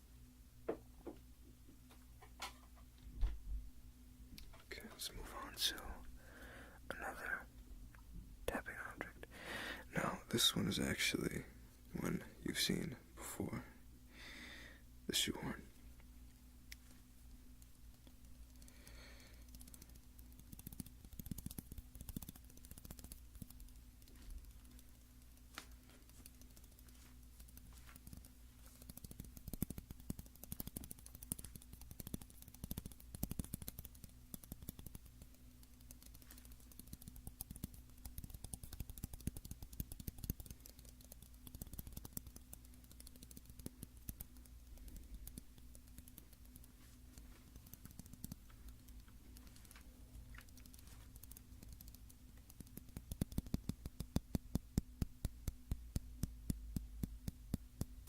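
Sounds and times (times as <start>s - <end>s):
rapid tapping on shoehorn: 17.6s - 58.0s.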